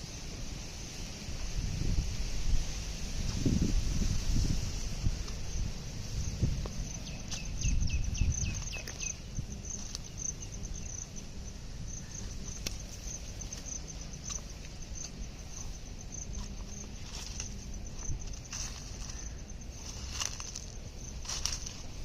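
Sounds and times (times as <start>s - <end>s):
insects trilling: 0.0s - 22.0s.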